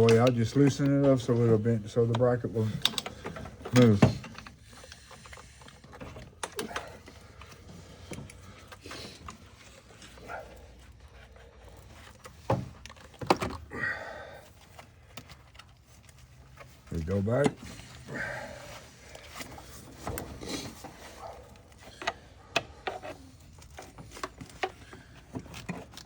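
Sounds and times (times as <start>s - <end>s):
hand tools clicking on bolts: 0.0s - 1.2s.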